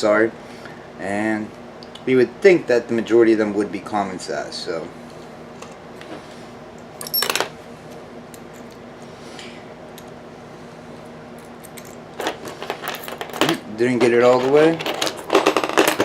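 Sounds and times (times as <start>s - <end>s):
faint steady hum: 0.0s - 16.0s
metal wrenches clinking: 11.7s - 16.0s.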